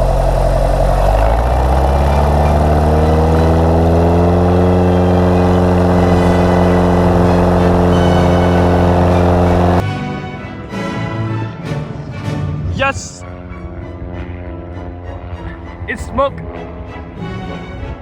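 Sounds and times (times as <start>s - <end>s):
plane piston engine running: 0.0s - 9.8s.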